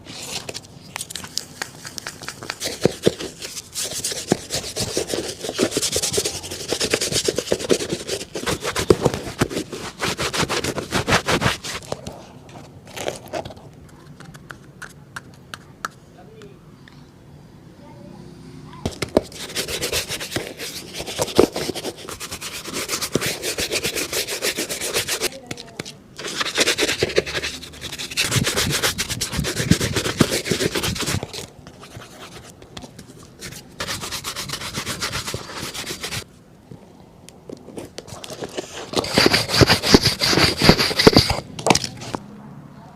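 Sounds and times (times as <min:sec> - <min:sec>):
brush rubbing on shoe: 0:01.6 - 0:11.9, 0:18.9 - 0:36.2, 0:38.3 - 0:41.5.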